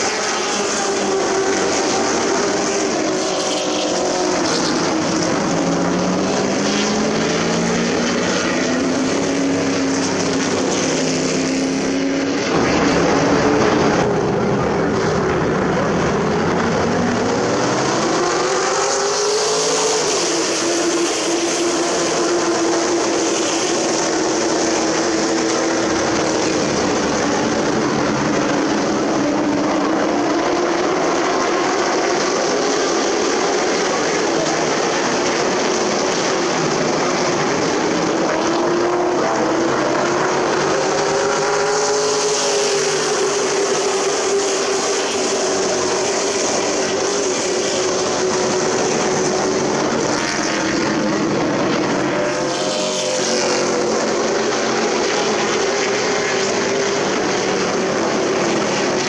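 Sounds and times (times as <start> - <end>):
race truck engines running hard: 0.0 - 59.0.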